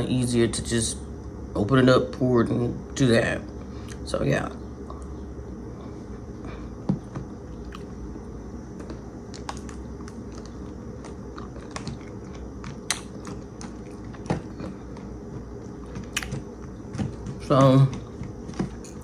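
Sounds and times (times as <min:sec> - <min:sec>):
steady low hum: 0:00.0 - 0:19.0
person chewing yogurt with granola: 0:04.8 - 0:19.0.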